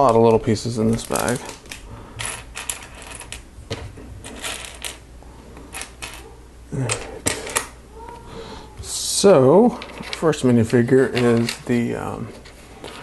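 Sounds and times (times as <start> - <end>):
plastic pieces clicking and rattling: 0.9 - 3.4.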